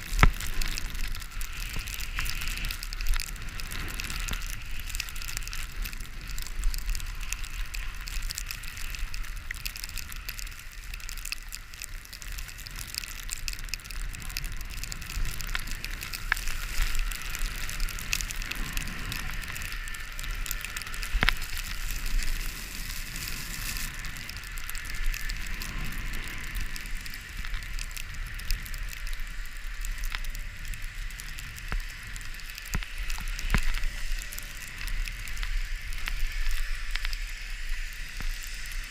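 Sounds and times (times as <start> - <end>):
skis hissing over snow: 0.0 - 38.9
small clicks and scrapes: 0.0 - 38.9
wind rumble on microphone: 0.0 - 38.9.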